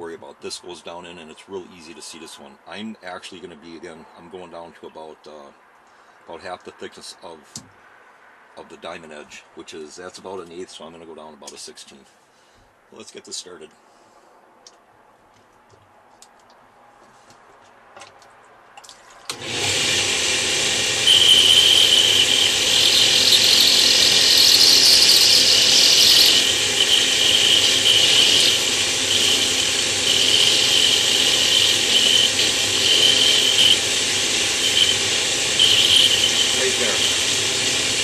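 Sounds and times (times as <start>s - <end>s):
high squeal of cutting bit: 19.3s - 38.0s
router cutting stone: 19.3s - 38.0s.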